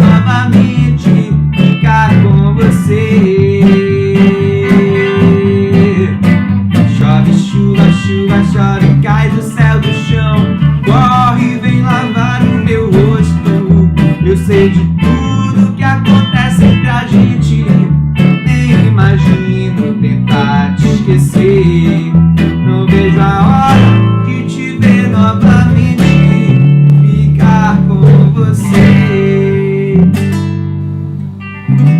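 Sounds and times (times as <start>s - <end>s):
acoustic guitar strumming: 0.0s - 31.9s
bass line: 0.0s - 31.9s.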